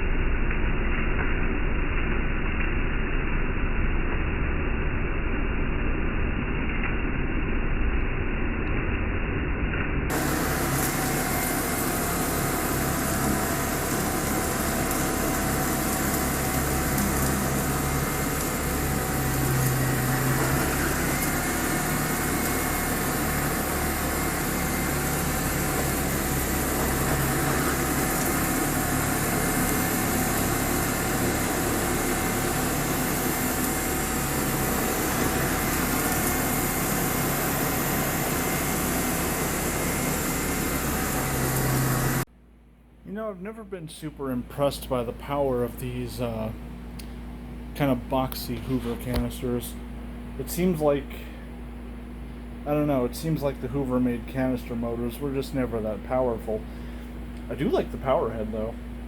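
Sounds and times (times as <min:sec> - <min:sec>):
vacuum cleaner running: 0:10.1 - 0:42.3, 0:44.5 - 0:59.0.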